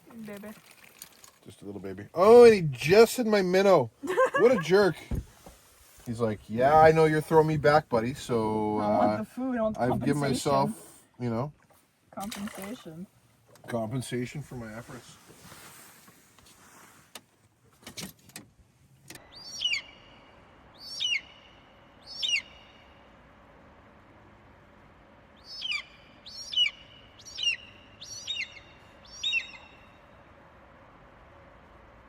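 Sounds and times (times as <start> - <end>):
bird sharp downward calls: 19.2 - 23.0, 25.4 - 30.1.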